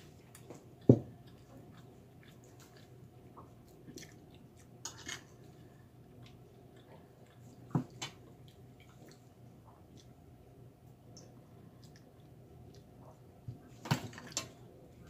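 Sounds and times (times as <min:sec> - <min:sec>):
crunchy chewing: 0:00.0 - 0:10.2
chewing with small clicks: 0:00.0 - 0:15.0.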